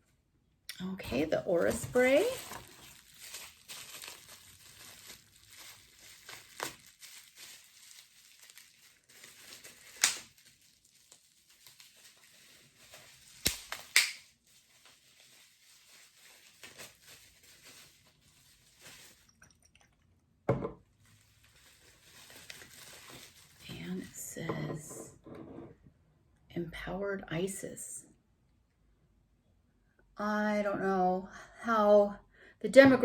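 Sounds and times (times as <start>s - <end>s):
packaging rustling and crinkling: 1.4s - 19.4s, 21.0s - 24.2s.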